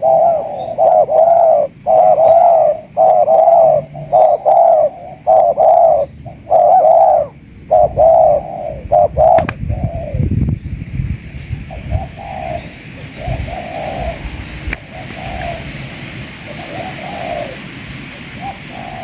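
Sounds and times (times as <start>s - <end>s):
dove cooing: 0.0s - 10.4s, 11.6s - 19.0s
sharp click: 9.4s - 9.6s.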